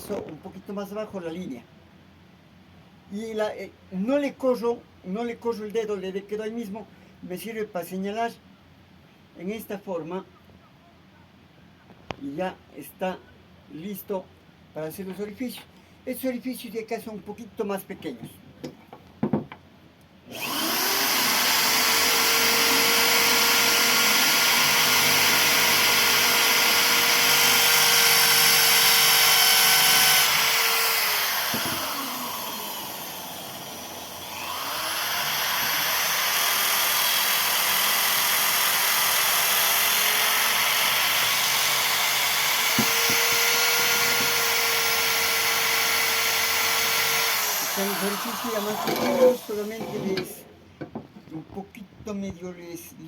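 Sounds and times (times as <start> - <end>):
electric drill boring: 20.3 - 50.4.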